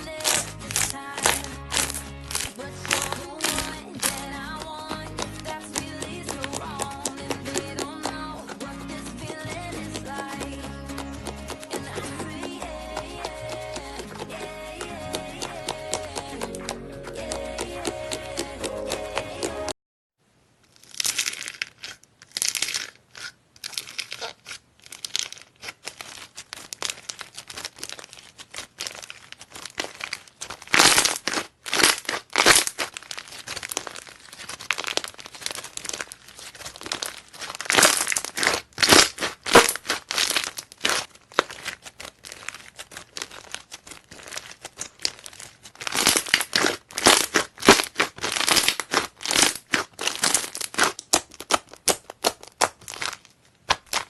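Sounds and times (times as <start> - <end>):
slime squeezed by hand: 0.0 - 7.9, 20.8 - 54.0.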